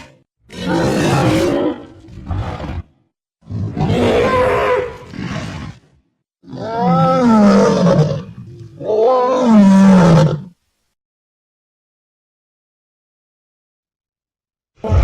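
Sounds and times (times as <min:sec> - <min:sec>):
monster roars: 0:03.6 - 0:05.8.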